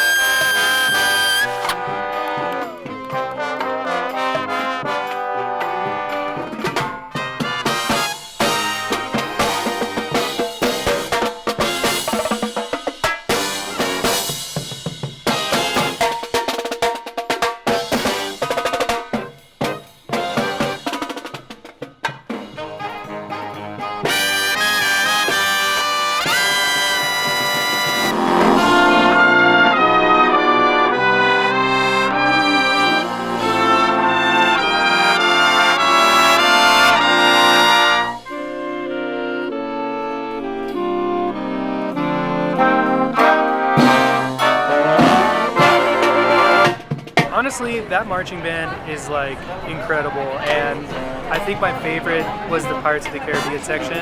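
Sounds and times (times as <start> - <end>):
snare drum strokes: 0.0 - 4.8, 6.2 - 22.6, 24.1 - 30.4, 42.9 - 47.7
brass chords: 0.0 - 12.6, 13.3 - 16.5, 17.7 - 21.2, 22.3 - 47.1, 50.7 - 54.0.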